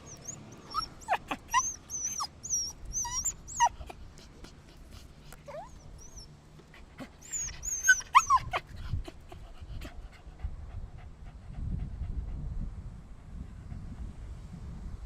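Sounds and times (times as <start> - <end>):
dog whining and yipping: 0.0 - 4.0, 5.4 - 6.3, 7.0 - 9.4.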